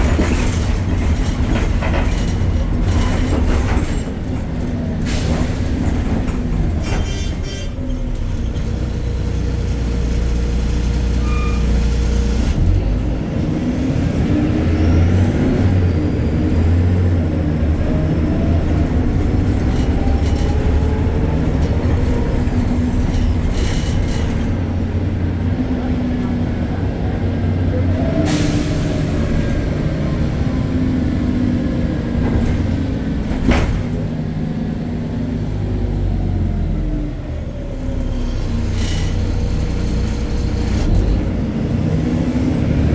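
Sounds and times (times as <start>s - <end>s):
bus diesel engine running: 0.0s - 42.9s.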